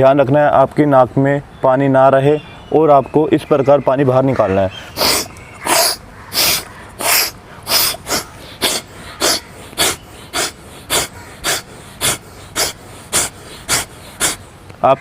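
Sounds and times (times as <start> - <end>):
sharp nasal exhalations: 4.8 - 14.7.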